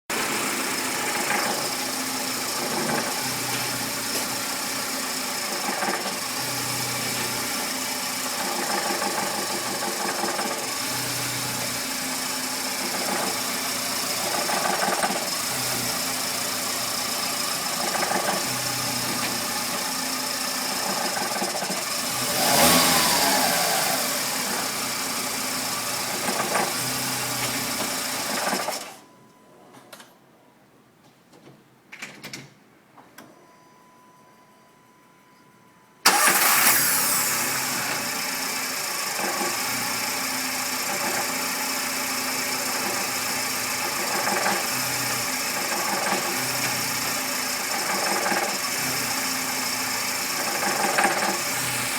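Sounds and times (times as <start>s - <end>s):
car engine running: 0.1s - 28.4s, 36.1s - 51.9s
engine revving: 20.6s - 28.7s, 36.1s - 51.9s.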